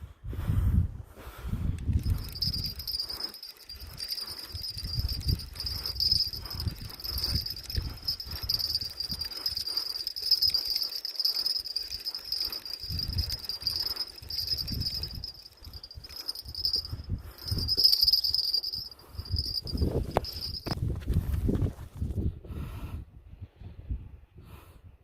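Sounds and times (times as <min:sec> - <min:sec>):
night insects trilling: 0:02.2 - 0:20.8.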